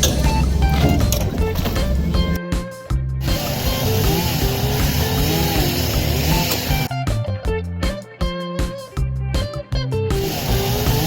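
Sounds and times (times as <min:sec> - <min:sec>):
gliding melody over low beat: 0:00.0 - 0:10.3.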